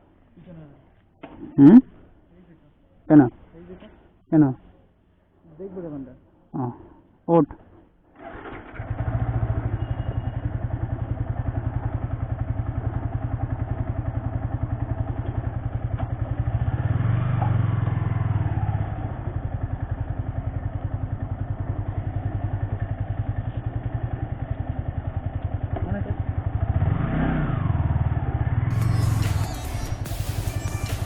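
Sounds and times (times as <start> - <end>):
motorcycle engine idling: 8.3 - 29.3.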